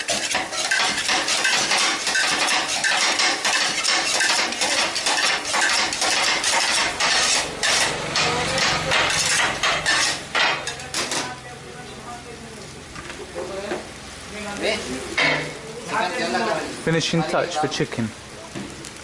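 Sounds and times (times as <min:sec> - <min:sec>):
metal blades clattering on griddle: 0:00.0 - 0:11.4.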